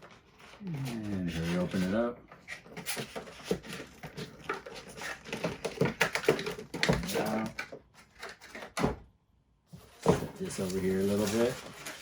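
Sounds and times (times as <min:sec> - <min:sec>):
packaging clicks taps and rustles: 0:02.7 - 0:08.9.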